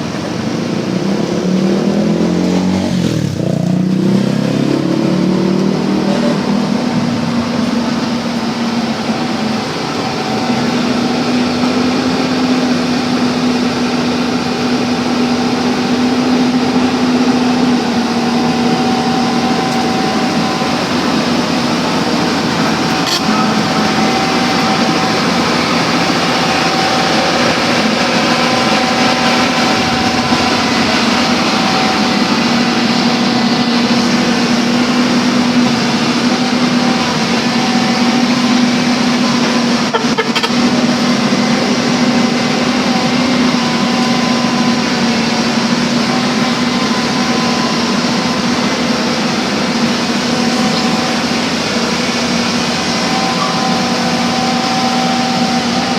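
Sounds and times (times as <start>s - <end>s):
backhoe engine running: 0.0s - 55.9s.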